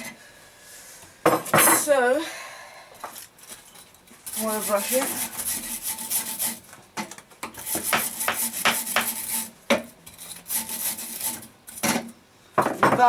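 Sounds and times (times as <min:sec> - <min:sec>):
wire brush scraping steel: 0:04.2 - 0:06.7, 0:07.6 - 0:12.0.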